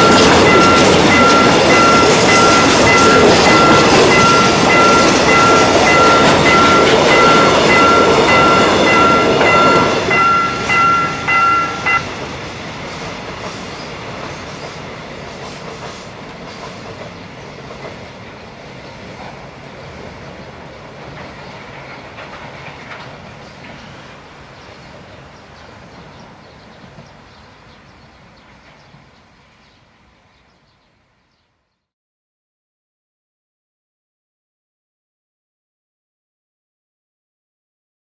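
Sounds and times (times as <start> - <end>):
crossing warning bell ringing: 0.0 - 14.5
train wheels clicking over rail joints: 0.0 - 29.8.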